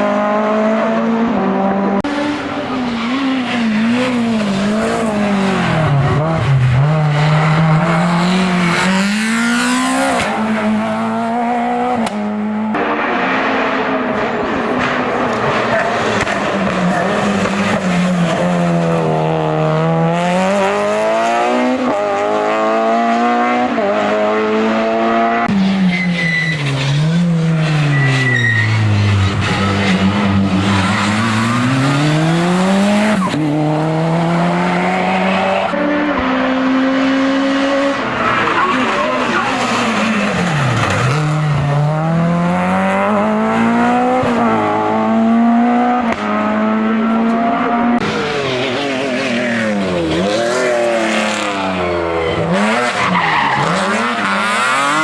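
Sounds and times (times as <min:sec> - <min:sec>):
racing car engine revving: 0:00.0 - 0:25.6, 0:26.6 - 0:55.0.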